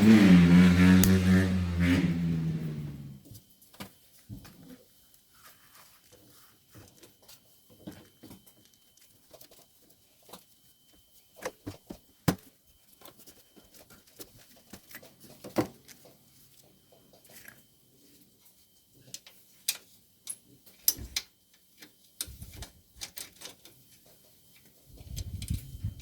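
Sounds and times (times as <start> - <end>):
clicks and knocks of parts: 19.0 - 23.8.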